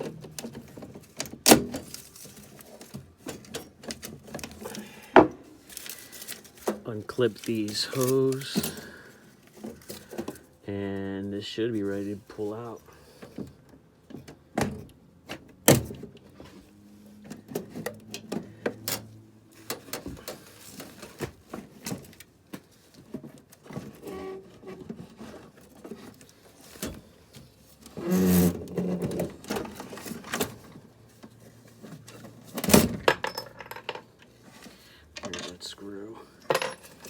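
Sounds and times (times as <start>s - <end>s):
rough metal scraping: 27.8s - 30.2s.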